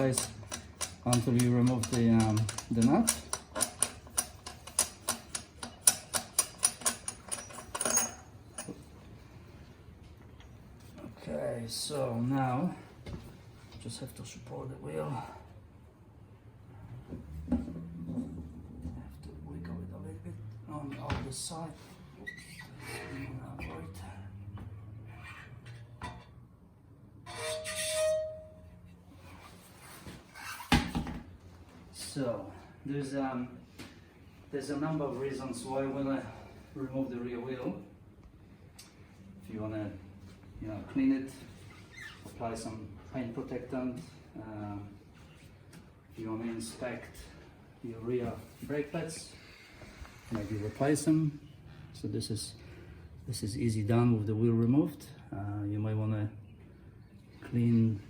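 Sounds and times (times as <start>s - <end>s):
ratchet clicking: 0.0s - 8.7s
metal scraping with ringing tone: 27.2s - 29.0s.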